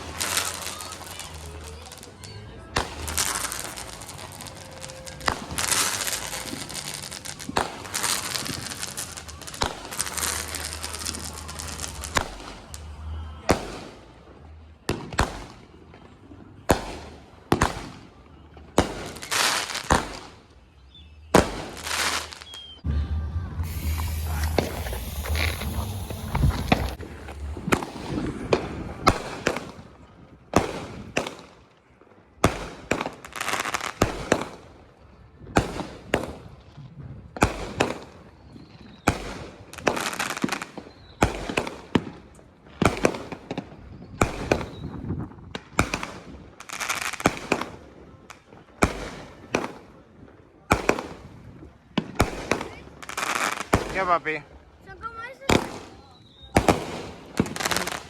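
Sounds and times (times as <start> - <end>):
firework reports with crackle: 0.0 - 58.0
low rumble: 22.8 - 30.1
hiss: 23.6 - 27.0.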